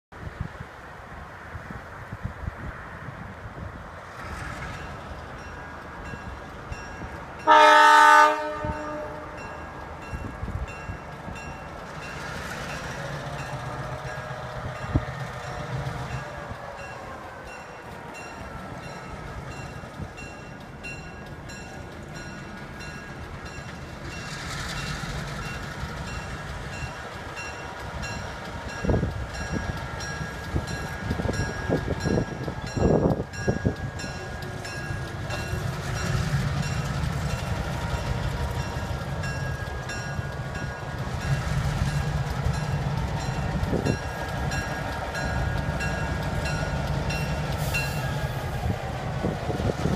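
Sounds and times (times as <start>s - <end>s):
locomotive horn blast: 7.4s - 9.8s
wheels squealing on rail: 11.4s - 49.9s.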